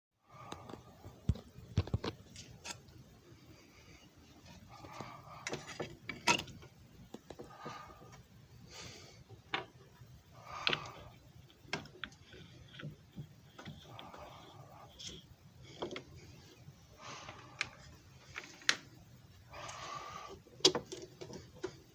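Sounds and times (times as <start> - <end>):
plastic parts clicking and rattling: 10.4 - 16.4, 20.6 - 21.9.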